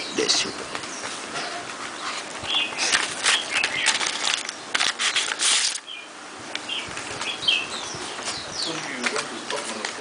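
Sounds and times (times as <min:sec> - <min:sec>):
faint birds chirping: 0:00.0 - 0:10.0
packaging rustling and crinkling: 0:01.6 - 0:05.9.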